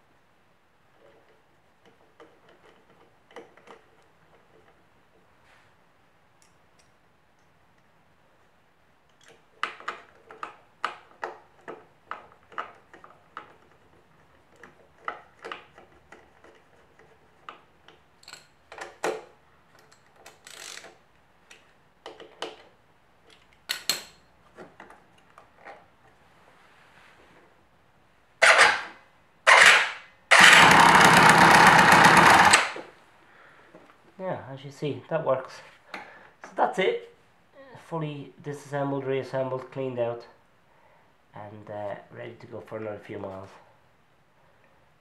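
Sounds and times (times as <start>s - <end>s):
small metal parts clicking: 14.5s - 22.6s.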